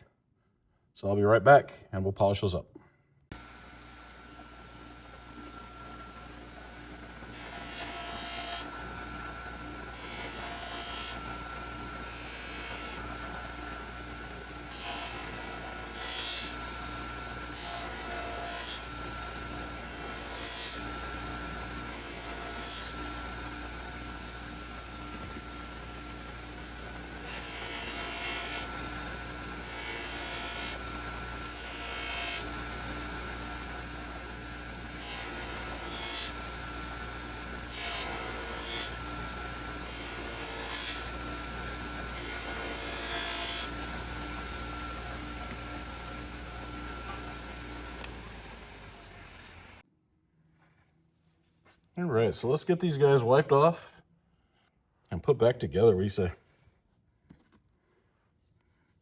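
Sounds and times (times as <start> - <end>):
electric polishing buffer running: 3.3 - 49.8.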